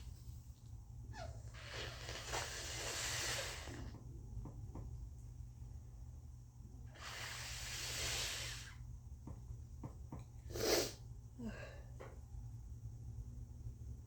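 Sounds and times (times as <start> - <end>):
person blowing nose: 1.4 - 4.0, 7.0 - 8.8, 10.5 - 11.0.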